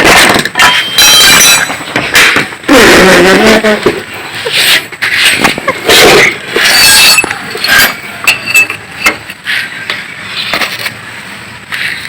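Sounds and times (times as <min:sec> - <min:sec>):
metal tools clinking: 0:00.2 - 0:02.4, 0:04.6 - 0:09.3.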